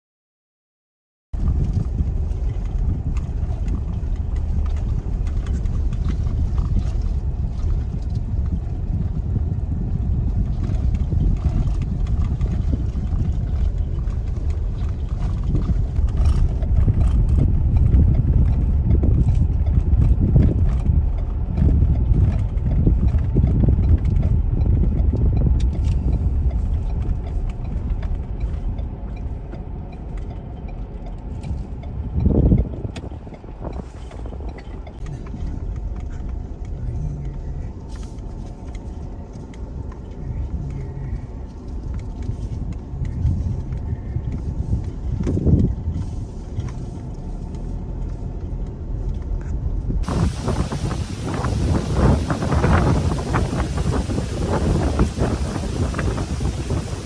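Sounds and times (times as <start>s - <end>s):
wind buffeting microphone: 1.4s - 57.0s.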